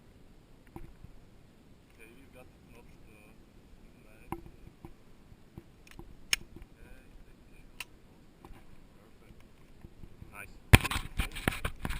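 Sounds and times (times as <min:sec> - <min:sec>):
pistol metallic clicks: 0:05.8 - 0:06.5.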